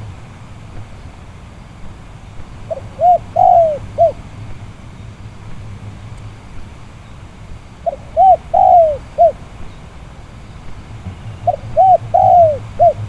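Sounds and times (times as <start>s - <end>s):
dove cooing: 2.4s - 6.2s, 6.9s - 13.0s.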